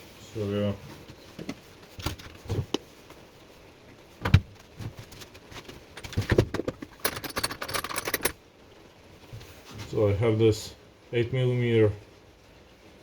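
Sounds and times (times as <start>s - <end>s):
metallic rattling: 5.5s - 8.4s
hand tools knocking and clicking: 6.0s - 8.4s.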